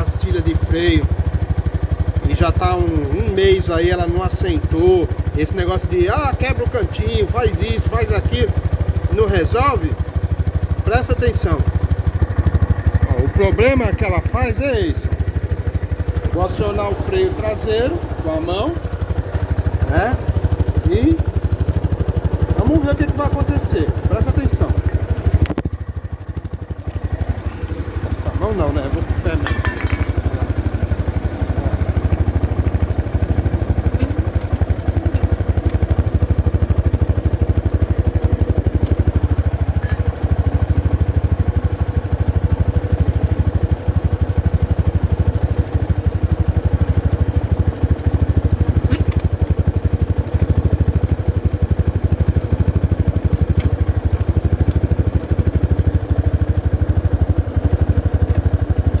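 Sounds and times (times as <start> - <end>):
motorcycle engine running: 0.0 - 59.0
brake pads noise: 33.6 - 36.2, 48.8 - 49.3.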